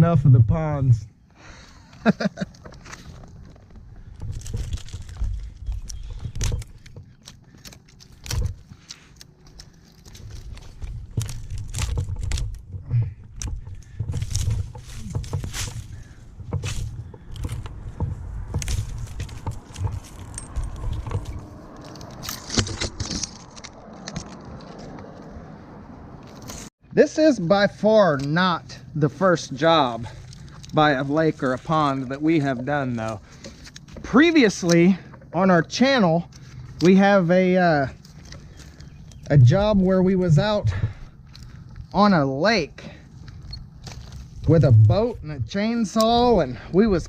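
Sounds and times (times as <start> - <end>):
metal carabiners clinking: 2.6 - 17.7, 18.5 - 23.7
low rumble on microphone: 10.3 - 22.2, 38.5 - 41.9, 43.5 - 46.7.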